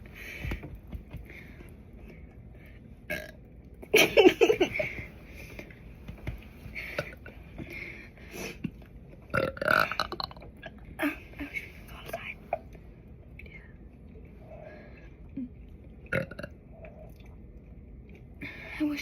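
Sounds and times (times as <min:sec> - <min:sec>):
girl burping loudly: 0:09.3 - 0:10.4.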